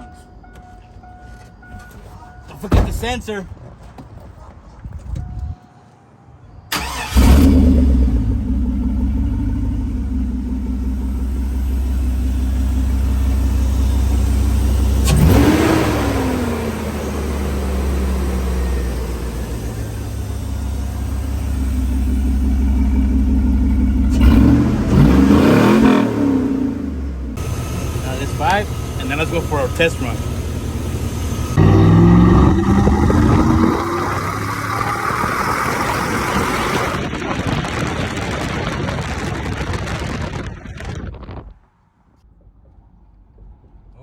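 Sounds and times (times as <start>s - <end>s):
truck engine starting and revving: 6.7s - 41.2s.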